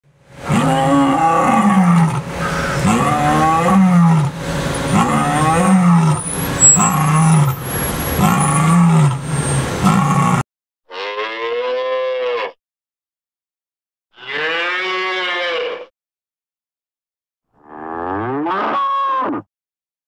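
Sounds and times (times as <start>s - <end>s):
lion roaring: 0.4s - 10.4s.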